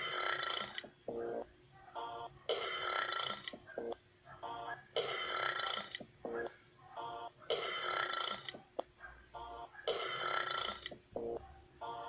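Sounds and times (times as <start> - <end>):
loud long burps: 0.0 - 0.8, 2.5 - 3.5, 5.0 - 6.0, 7.5 - 8.5, 9.9 - 10.9.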